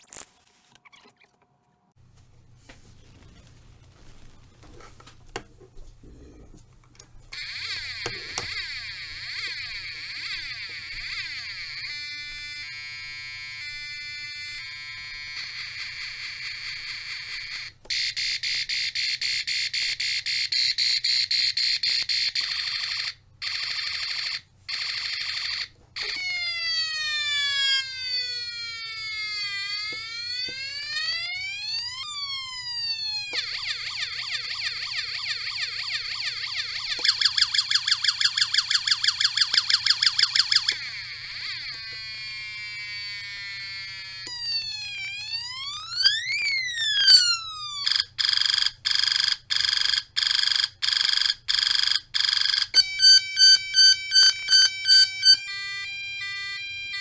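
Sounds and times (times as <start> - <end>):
electronic siren-like sweeps: 2.8 - 4.6, 7.3 - 17.7, 24.8 - 48.6, 52.8 - 57.0.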